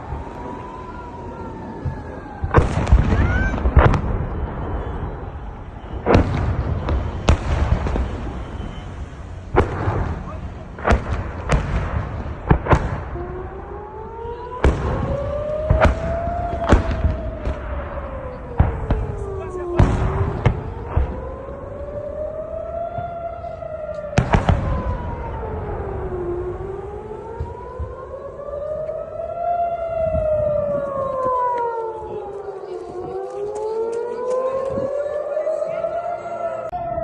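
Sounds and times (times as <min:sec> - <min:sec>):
rocket-alert siren wailing: 0:00.0 - 0:37.0
sharp explosions: 0:01.6 - 0:22.2, 0:22.8 - 0:28.7.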